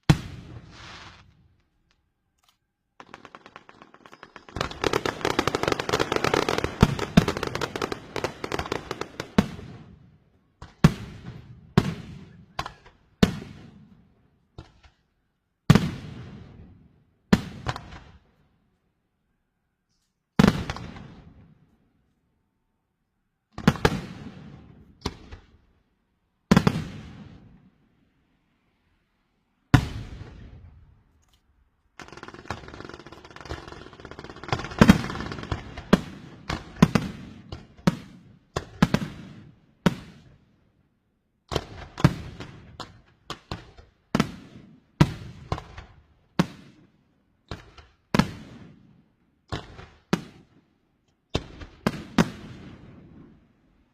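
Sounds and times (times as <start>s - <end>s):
fireworks bangs echoing: 0.0s - 1.5s, 3.0s - 10.0s, 15.7s - 16.7s, 23.6s - 25.5s, 26.5s - 27.6s, 29.7s - 30.8s, 32.0s - 40.4s, 51.3s - 53.4s
fireworks crackling hiss: 0.5s - 1.4s.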